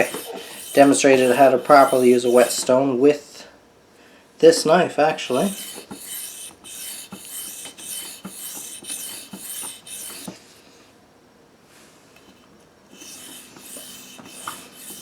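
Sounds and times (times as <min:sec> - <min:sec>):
knife scraping on whetstone: 0:00.0 - 0:02.7, 0:05.3 - 0:10.3, 0:13.0 - 0:15.0.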